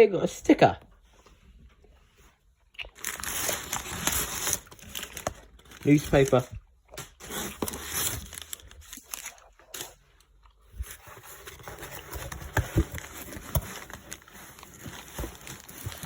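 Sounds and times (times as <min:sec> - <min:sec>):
newspaper rustling and crumpling: 0:03.0 - 0:10.0, 0:10.7 - 0:16.0.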